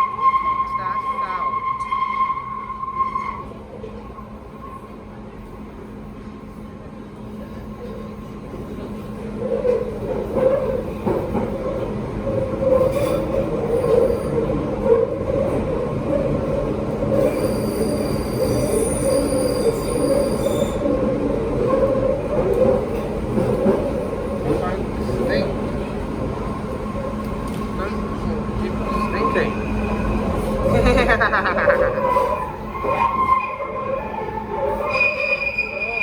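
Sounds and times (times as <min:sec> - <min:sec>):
train rumbling through station: 0:00.0 - 0:36.0
high-pitched wheel squeal: 0:17.2 - 0:20.9, 0:31.9 - 0:36.0.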